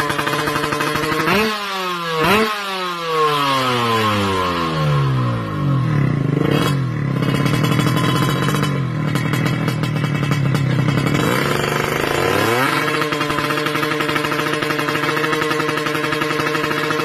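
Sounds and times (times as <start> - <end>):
two-stroke motorbike engine revving: 0.0 - 17.0.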